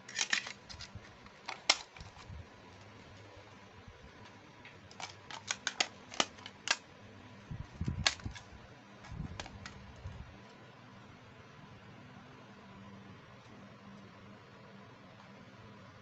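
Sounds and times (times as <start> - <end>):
plastic pieces clicking and tapping: 0.0 - 2.2, 4.6 - 6.8.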